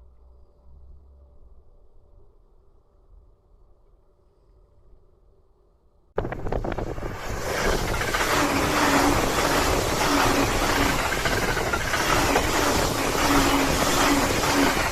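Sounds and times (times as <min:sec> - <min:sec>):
train wheels rumbling on rail: 0:06.2 - 0:14.9.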